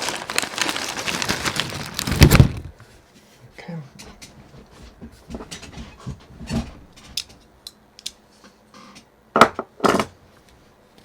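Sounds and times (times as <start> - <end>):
plastic bag crinkling: 0.0 - 2.8.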